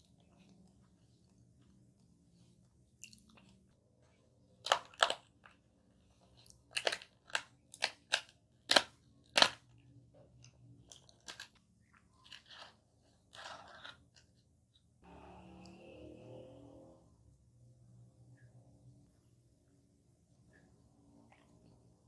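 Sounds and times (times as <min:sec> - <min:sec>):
crunchy pie crust bites: 0:04.6 - 0:05.6, 0:06.4 - 0:09.8.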